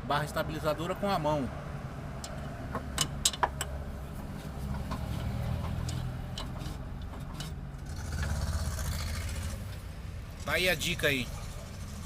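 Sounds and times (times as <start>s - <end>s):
metal bar knocking and clicking: 2.2s - 3.8s.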